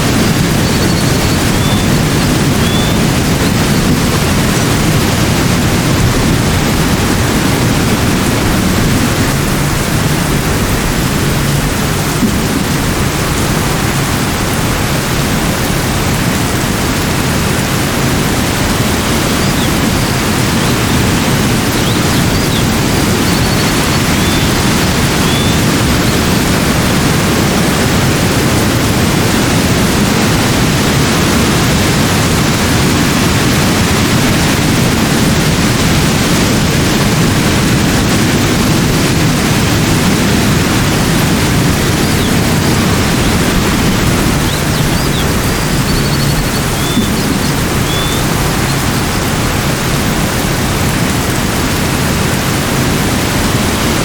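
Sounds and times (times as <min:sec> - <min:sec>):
rushing water: 0:00.0 - 0:54.0
faint high chirps: 0:19.2 - 0:25.7, 0:44.3 - 0:48.8.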